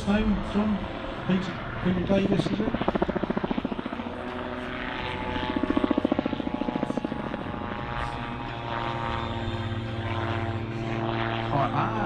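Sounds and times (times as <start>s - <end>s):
aircraft engine and propeller drone: 0.0s - 12.0s
rapid pulsing beat: 2.1s - 4.2s.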